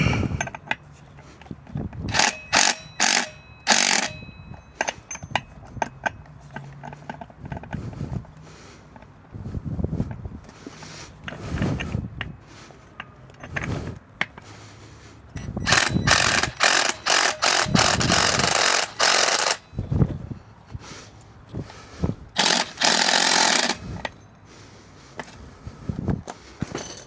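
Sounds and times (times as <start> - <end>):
impact wrench hammering: 2.1 - 6.2, 15.6 - 19.6, 22.4 - 24.1.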